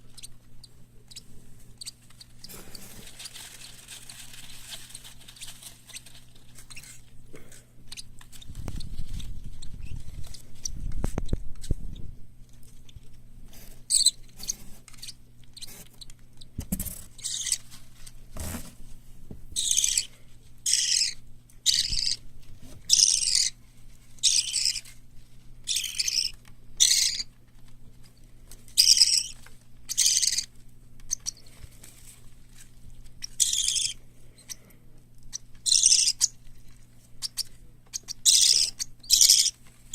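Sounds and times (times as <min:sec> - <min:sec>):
parrot chicks hissing calls: 0:19.6 - 0:22.2, 0:22.9 - 0:23.6, 0:24.2 - 0:24.8, 0:25.7 - 0:27.3, 0:29.9 - 0:30.5, 0:33.2 - 0:34.7, 0:35.3 - 0:36.3, 0:38.0 - 0:39.5.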